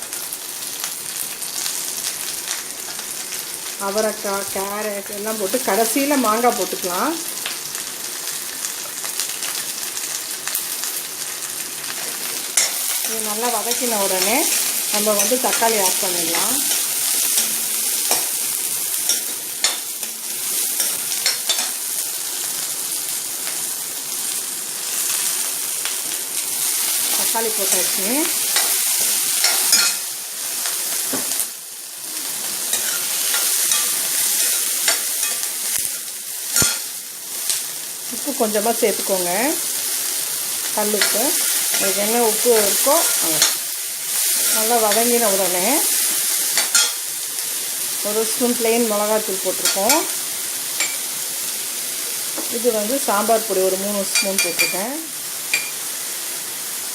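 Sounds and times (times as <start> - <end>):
vegetables sizzling in hot oil: 0.0 - 56.9
spoon scraping a pan: 12.0 - 21.9, 26.9 - 31.4, 32.6 - 36.9, 40.9 - 45.2, 45.9 - 47.0, 49.6 - 50.2, 50.8 - 51.1, 54.1 - 54.9, 55.5 - 55.9.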